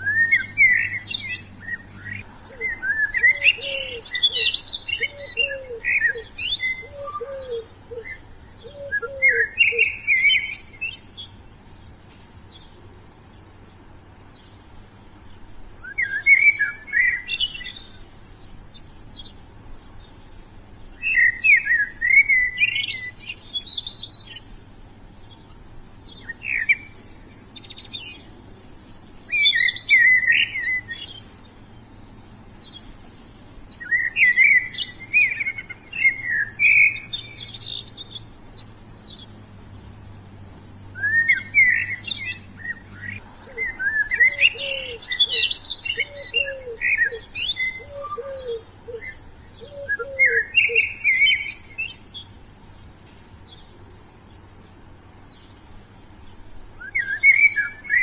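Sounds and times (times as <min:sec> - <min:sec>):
songbirds twittering: 0:00.0 - 0:58.0.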